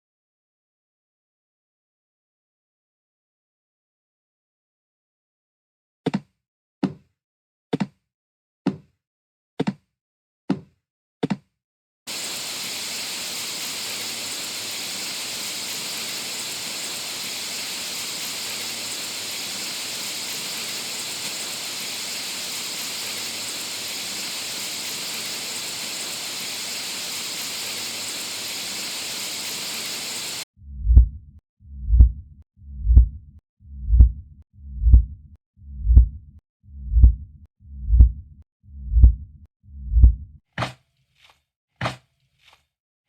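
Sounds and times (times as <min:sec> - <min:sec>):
steady even hiss: 0:12.1 - 0:30.4.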